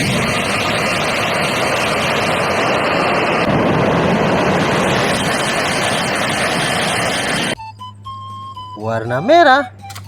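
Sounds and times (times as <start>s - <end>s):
train rushing roar: 0.0s - 7.6s.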